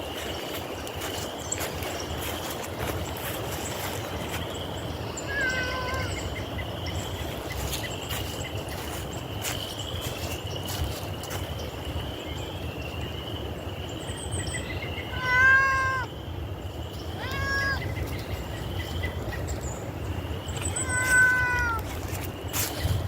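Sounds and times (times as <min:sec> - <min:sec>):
high trills of insects or birds: 0:00.0 - 0:23.0
cat meowing: 0:05.3 - 0:06.2, 0:15.1 - 0:16.1, 0:17.2 - 0:17.9, 0:20.7 - 0:21.9.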